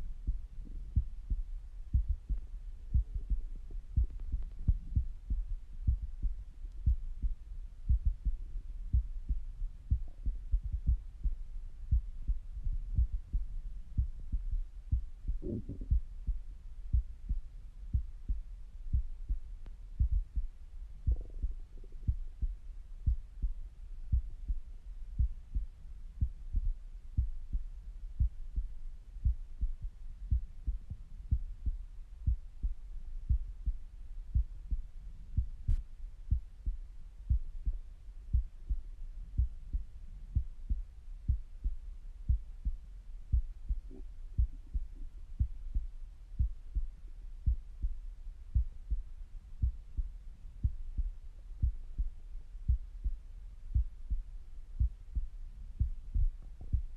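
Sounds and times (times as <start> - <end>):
heartbeat through stethoscope: 0.0 - 56.9
stomach gurgle: 15.4 - 16.0.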